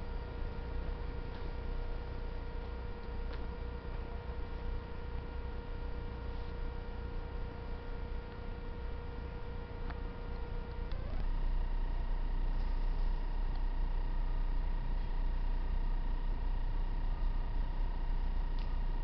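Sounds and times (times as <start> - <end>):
diesel railcar idling: 0.0 - 19.0.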